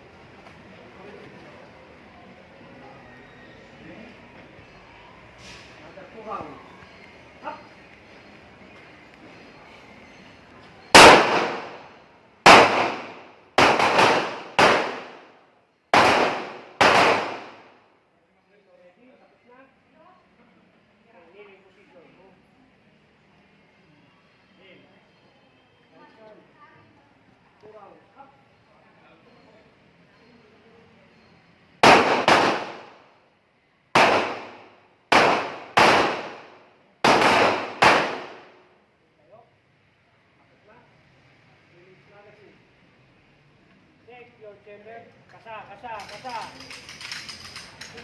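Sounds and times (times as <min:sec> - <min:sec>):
pistol shots with echo: 0:10.9 - 0:17.8, 0:31.8 - 0:33.1, 0:34.0 - 0:38.6.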